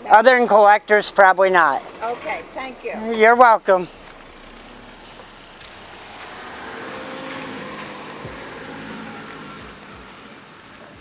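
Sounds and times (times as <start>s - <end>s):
vehicle passing: 0.8s - 11.0s.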